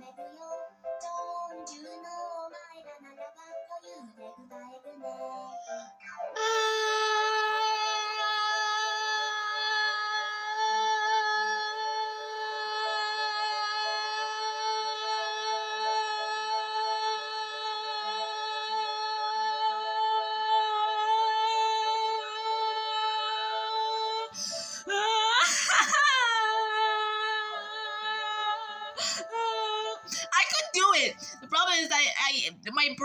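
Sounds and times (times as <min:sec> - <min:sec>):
woman singing long note: 0:06.4 - 0:31.7.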